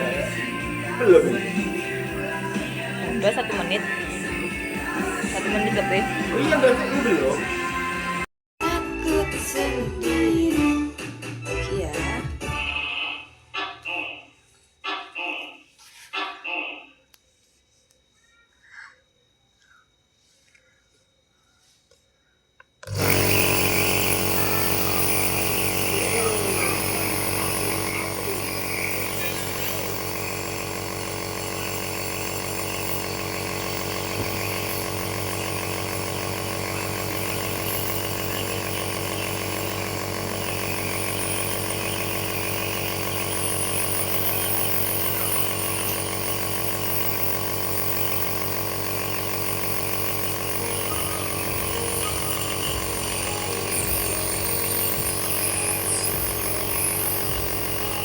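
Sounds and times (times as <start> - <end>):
nebulizer motor hum: 0.0 - 8.3, 22.6 - 58.0.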